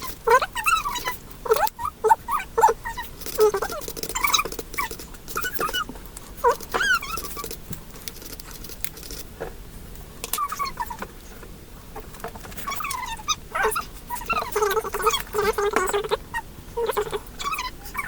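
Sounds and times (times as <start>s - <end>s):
dog whimpering: 0.0s - 5.8s, 12.6s - 18.0s.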